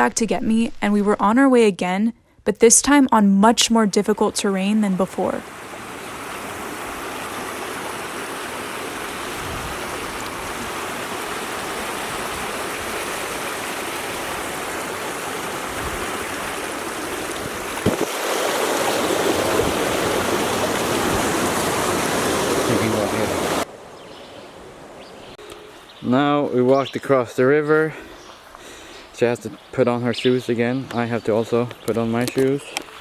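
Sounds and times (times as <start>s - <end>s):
river running over rocks: 4.5s - 23.9s.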